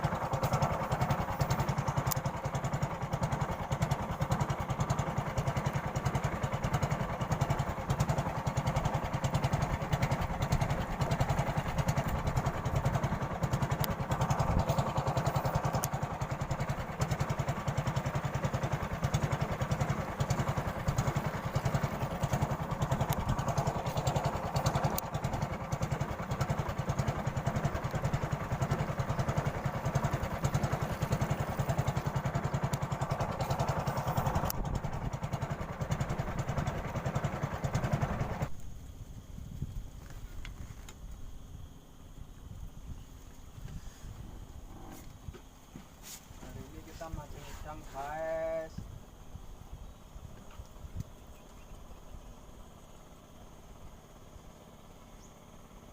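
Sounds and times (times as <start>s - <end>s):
small engine chugging: 0.0s - 55.9s.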